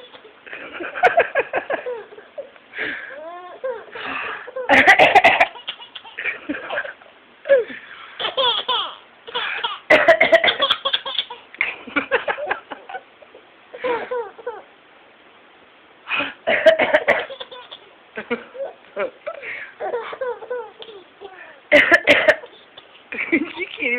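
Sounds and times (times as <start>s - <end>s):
baby laughing: 0.0s - 2.5s, 4.5s - 12.4s, 13.8s - 14.7s, 16.9s - 23.8s.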